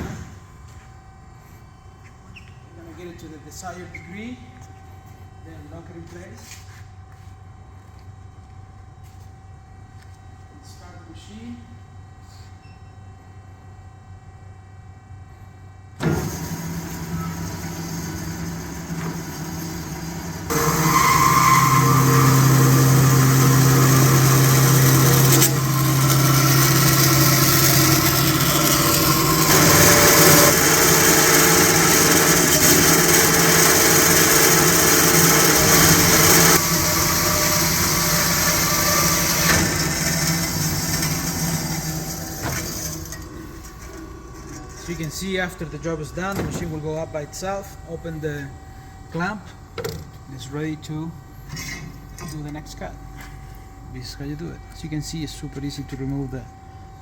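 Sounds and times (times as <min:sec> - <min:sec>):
metal-cutting bandsaw running: 0:16.0 - 0:47.1.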